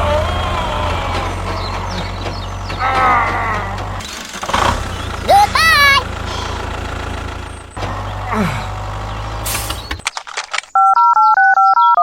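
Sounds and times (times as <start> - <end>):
low engine rumble: 0.0 - 10.1
electronic ringtone beeps: 10.8 - 12.0.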